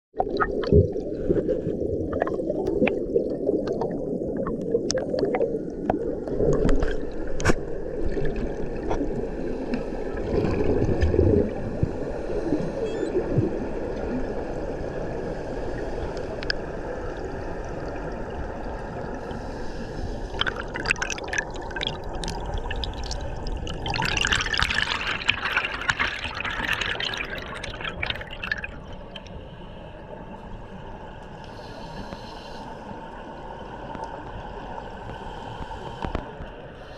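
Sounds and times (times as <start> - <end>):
underwater air bubbles gurgling: 0.2 - 36.9
fizzing crackling bubbles: 20.3 - 29.3.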